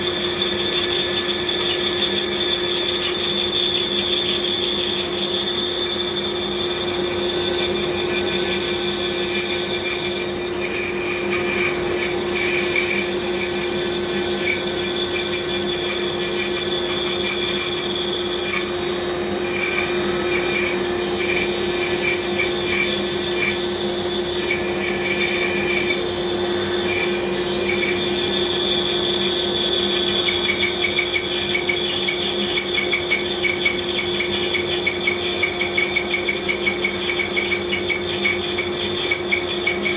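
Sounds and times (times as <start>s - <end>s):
bandsaw running: 0.0s - 39.9s
saw blade rasping through wood: 0.0s - 39.9s.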